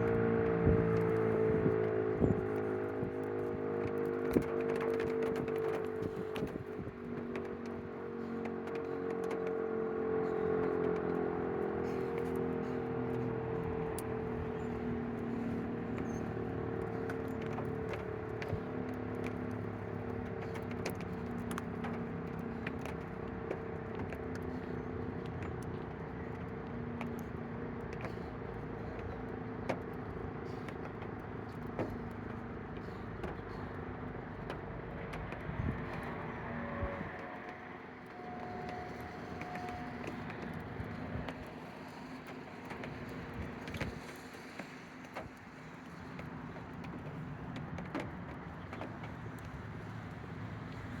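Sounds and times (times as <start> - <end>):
road vehicles running: 0.0 - 51.0.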